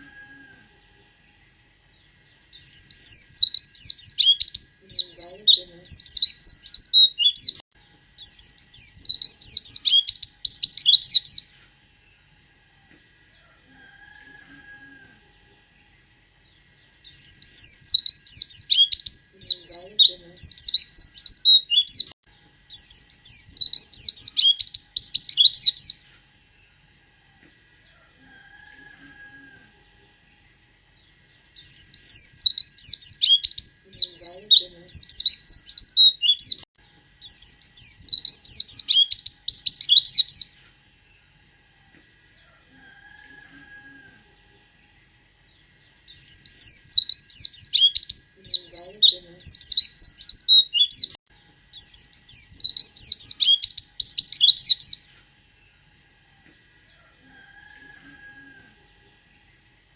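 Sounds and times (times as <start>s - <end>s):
bird singing high chattering song: 1.1s - 12.1s, 15.8s - 26.8s, 30.9s - 41.3s, 44.8s - 55.8s.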